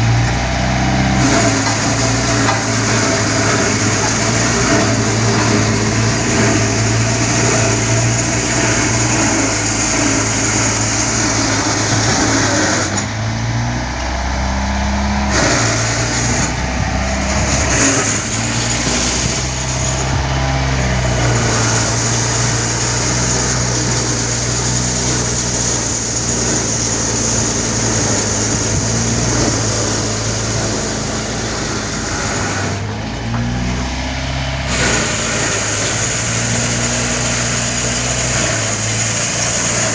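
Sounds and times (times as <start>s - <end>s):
engine running under load: 0.0s - 39.9s.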